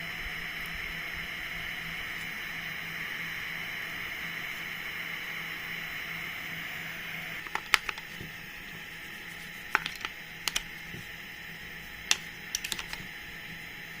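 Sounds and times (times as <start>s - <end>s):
small tools clicking and tapping: 9.7s - 11.0s, 12.1s - 13.1s.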